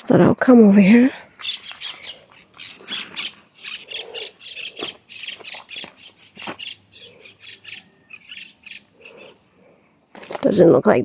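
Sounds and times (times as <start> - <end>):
footsteps through dry vegetation: 1.3 - 7.6.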